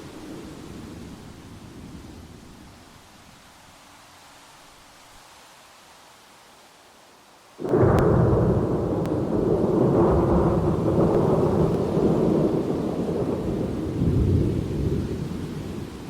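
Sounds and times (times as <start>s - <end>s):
thunder rumbling: 7.6s - 16.0s.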